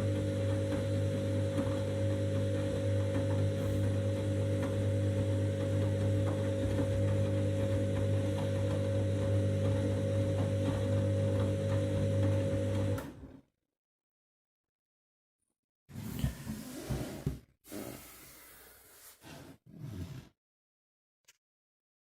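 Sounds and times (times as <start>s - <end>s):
washing machine motor hum: 0.0s - 13.4s.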